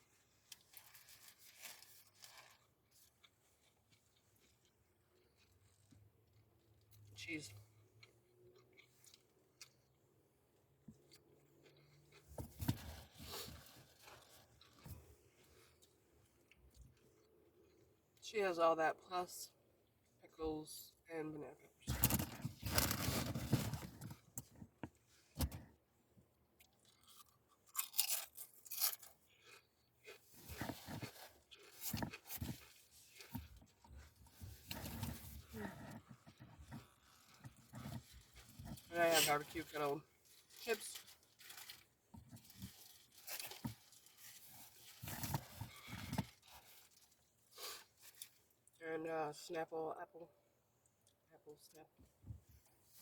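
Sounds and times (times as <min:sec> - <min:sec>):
chip bag crinkling and tearing: 0:00.7 - 0:02.7, 0:27.0 - 0:29.6, 0:40.2 - 0:41.8
people biting and chewing: 0:26.6 - 0:38.3.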